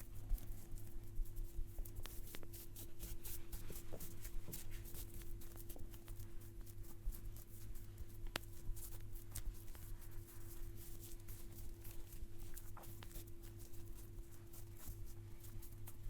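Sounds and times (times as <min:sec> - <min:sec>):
low electrical hum: 0:00.0 - 0:16.0
hands rubbing on skin and hair: 0:00.4 - 0:16.0.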